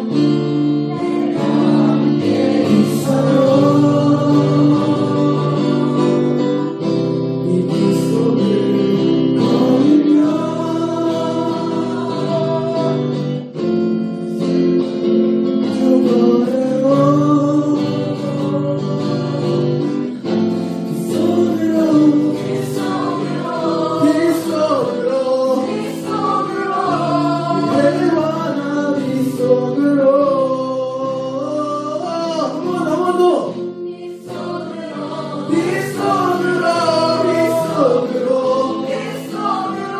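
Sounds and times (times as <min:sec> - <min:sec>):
group of people singing: 0:00.0 - 0:13.6, 0:14.3 - 0:39.9
acoustic guitar: 0:00.0 - 0:39.9.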